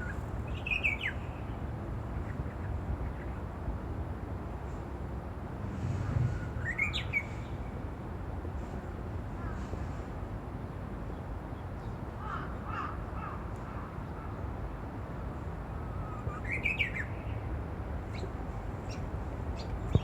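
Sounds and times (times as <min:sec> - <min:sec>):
steady low rumble: 0:05.1 - 0:08.6
songbird song phrases: 0:16.0 - 0:17.5.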